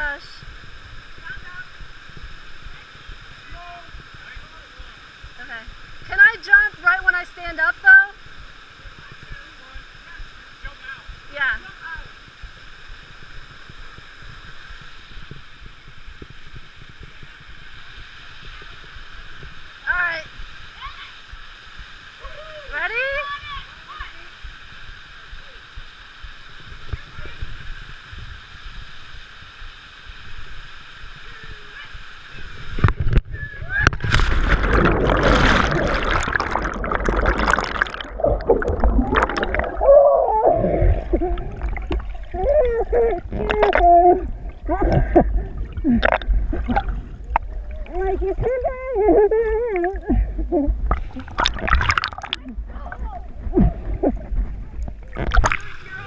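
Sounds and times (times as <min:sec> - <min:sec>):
low rumbles on microphone: 0:32.6 - 0:55.8
waterfall rushing: 0:34.0 - 0:54.1.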